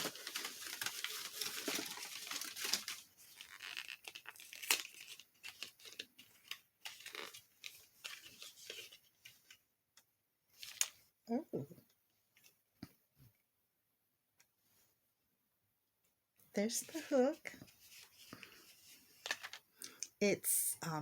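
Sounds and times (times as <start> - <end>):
packing paper crinkling and tearing: 0.0 - 9.6.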